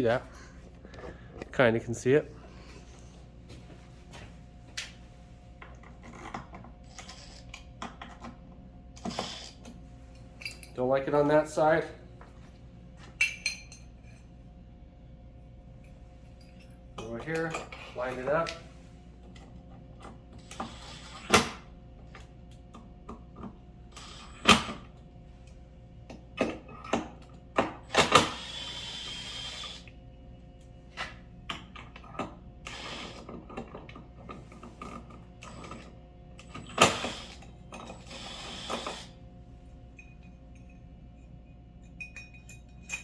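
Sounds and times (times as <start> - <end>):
faint steady hum: 0.0 - 43.0
metal taps and clinks: 13.2 - 14.2, 39.9 - 43.0.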